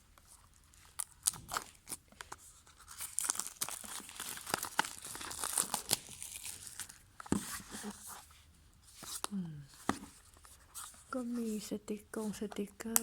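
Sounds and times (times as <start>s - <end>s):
plastic shrink-wrap tearing: 2.8s - 7.0s.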